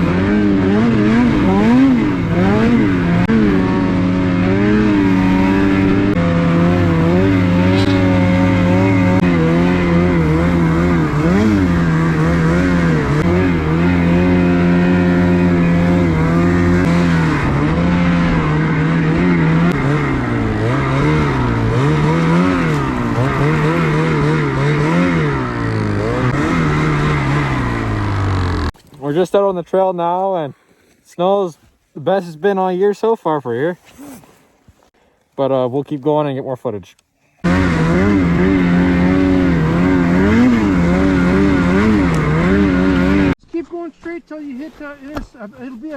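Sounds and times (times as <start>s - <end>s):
snowmobile engine running: 0.0s - 29.9s, 37.4s - 43.4s.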